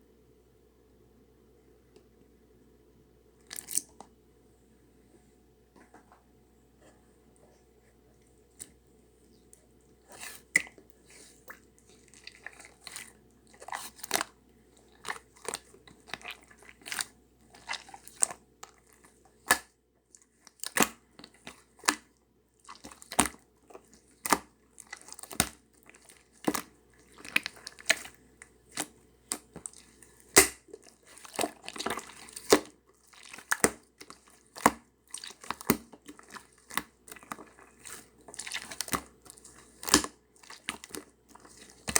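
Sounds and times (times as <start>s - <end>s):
slime squeezed with sticky pops: 30.3s - 41.9s.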